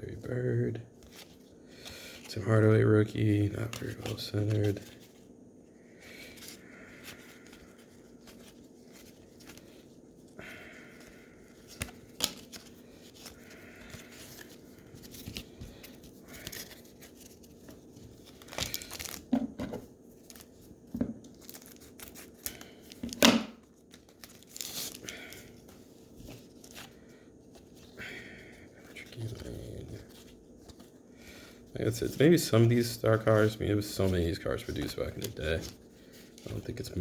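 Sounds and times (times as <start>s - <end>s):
wrappers crinkling: 11.6s - 19.3s, 20.1s - 23.1s, 23.7s - 27.0s
wrappers ripping: 18.2s - 19.3s, 23.9s - 25.4s.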